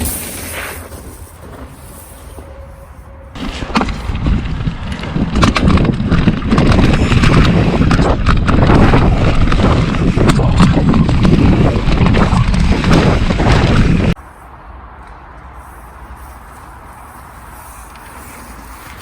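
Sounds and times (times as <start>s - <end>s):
bike tyres rumbling over rough ground: 0.0s - 14.2s, 16.2s - 19.0s
bike rattles and knocks: 3.3s - 14.2s
wind buffeting microphone: 3.3s - 14.2s.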